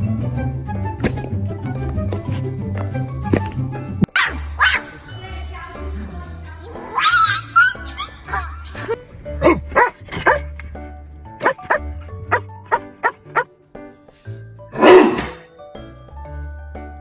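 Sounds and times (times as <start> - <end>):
dog barking sharply: 9.4 - 10.4, 11.4 - 13.4
wavering cry: 9.4 - 10.4, 11.4 - 11.8.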